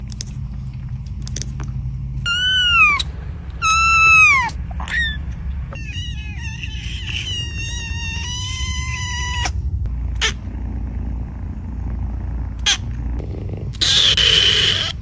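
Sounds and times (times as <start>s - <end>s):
kittens meowing: 2.2s - 9.6s.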